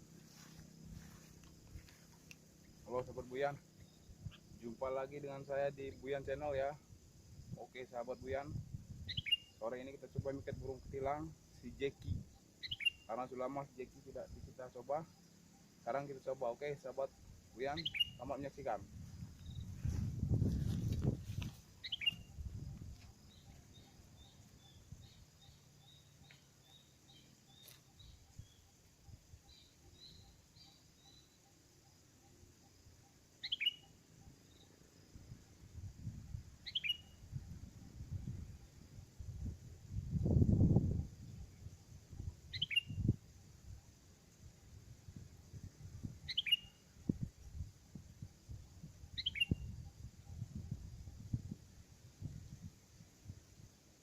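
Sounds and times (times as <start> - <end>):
bulbul high chirps: 17.6 - 18.5, 21.8 - 28.7.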